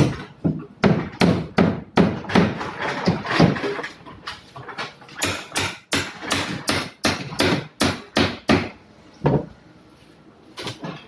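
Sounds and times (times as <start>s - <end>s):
hard knocks: 0.0s - 3.6s.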